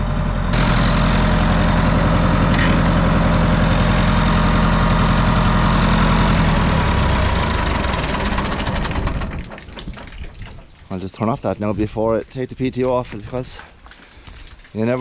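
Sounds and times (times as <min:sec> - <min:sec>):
tractor diesel engine under load: 0:00.0 - 0:10.4.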